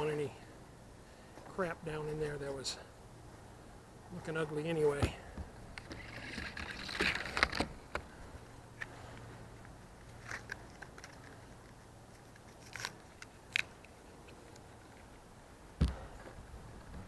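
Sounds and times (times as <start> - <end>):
dull thump: 15.8 - 16.3.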